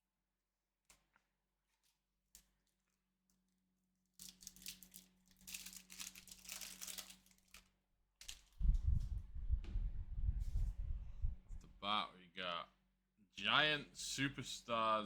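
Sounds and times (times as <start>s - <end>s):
card pack wrapper tearing and crinkling: 4.2s - 8.6s.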